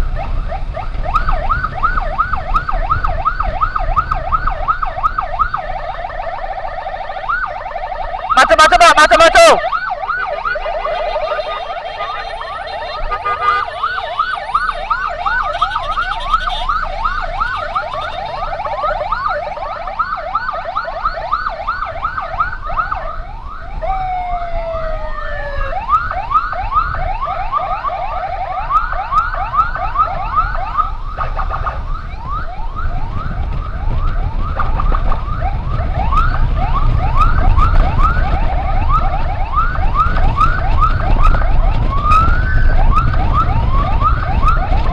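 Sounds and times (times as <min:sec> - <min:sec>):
emergency siren yelping: 0:00.0 - 0:44.9
slower falling siren tone: 0:09.2 - 0:30.9.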